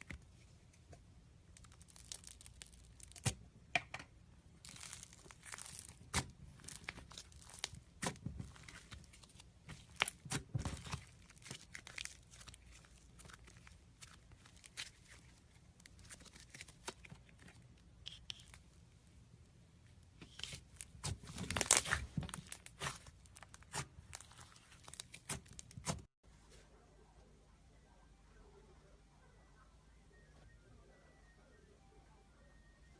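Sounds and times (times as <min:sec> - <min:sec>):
faint low hum: 0:26.2 - 0:32.9.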